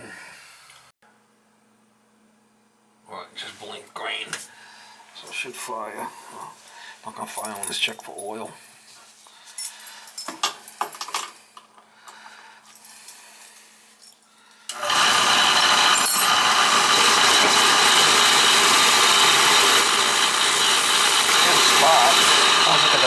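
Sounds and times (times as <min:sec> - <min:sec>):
oil burner motor whirring: 0:14.7 - 0:23.0.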